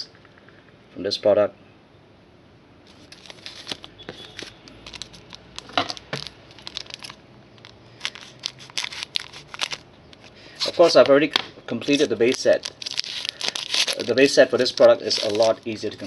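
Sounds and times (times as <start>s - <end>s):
wrapper tearing and crinkling: 2.9s - 11.2s, 11.8s - 16.0s.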